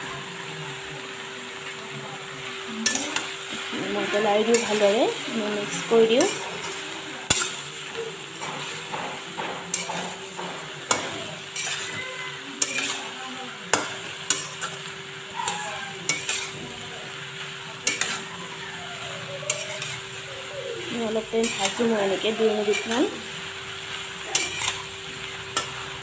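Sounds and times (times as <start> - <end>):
frying sizzle: 0.0 - 26.0
spatula knocking and scraping pan: 8.4 - 12.0, 12.6 - 13.1, 19.5 - 20.2, 21.1 - 23.3, 24.2 - 24.9.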